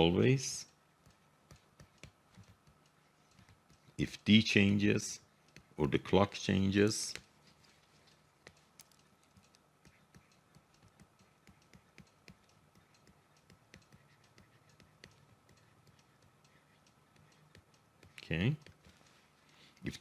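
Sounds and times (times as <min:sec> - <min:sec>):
faint steady hum: 0:00.0 - 0:20.0
typing on computer keyboard: 0:01.0 - 0:03.9, 0:08.1 - 0:19.2.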